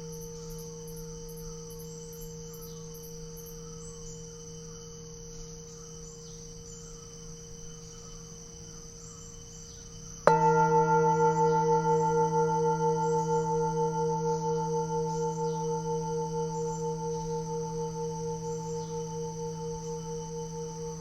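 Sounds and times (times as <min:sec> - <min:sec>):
singing bowl ringing: 0:00.0 - 0:04.2, 0:10.3 - 0:21.0
crickets chirping: 0:00.0 - 0:21.0
singing bowl struck: 0:10.3 - 0:21.0.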